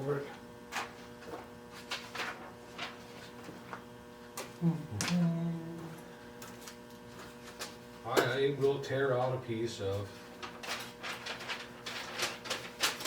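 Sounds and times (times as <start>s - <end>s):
low electrical hum: 0.0s - 13.0s
person humming: 4.5s - 6.2s.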